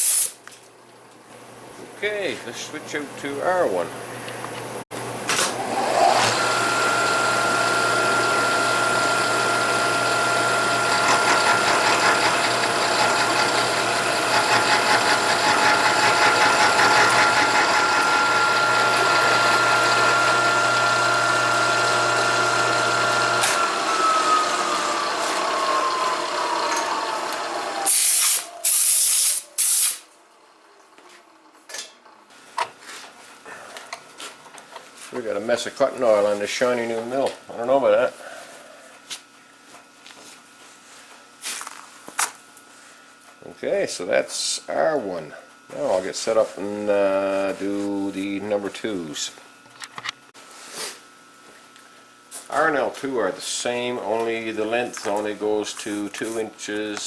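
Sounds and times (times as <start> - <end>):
milling machine cutting metal: 5.5 - 28.4.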